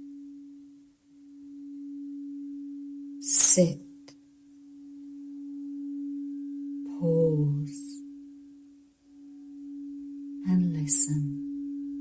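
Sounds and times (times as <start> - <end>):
pure sustained tone: 0.0 - 12.0.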